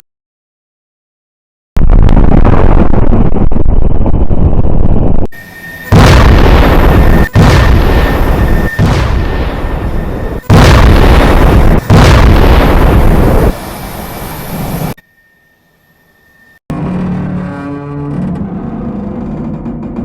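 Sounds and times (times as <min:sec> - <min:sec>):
explosion blasts with deep rumble: 0:01.8 - 0:05.3, 0:05.9 - 0:14.9.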